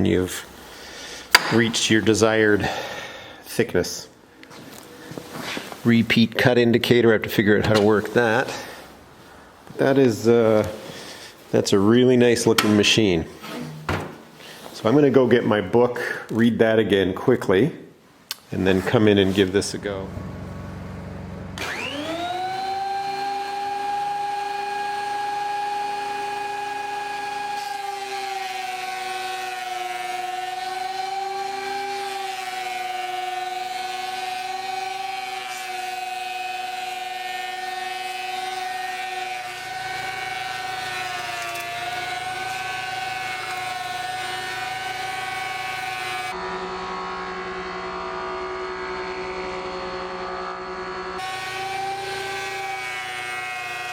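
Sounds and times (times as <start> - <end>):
thickness planer motor whining: 1.2 - 2.1, 7.6 - 9.8, 18.9 - 53.9.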